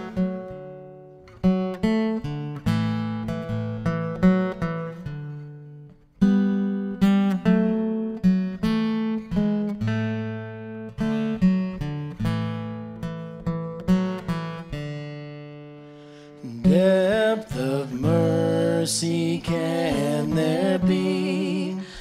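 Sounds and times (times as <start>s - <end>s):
acoustic guitar picking: 0.0s - 22.0s
voices singing: 16.5s - 22.0s.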